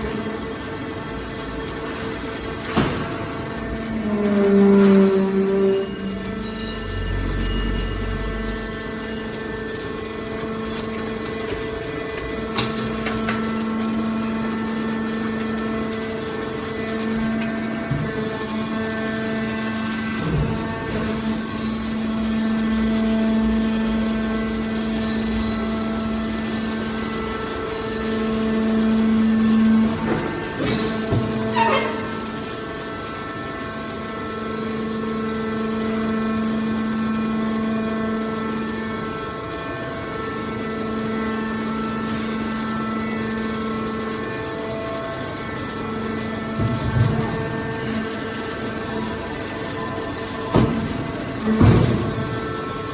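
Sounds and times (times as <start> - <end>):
constant whine: 0.0 - 52.9
hydraulic baler humming: 0.0 - 52.9.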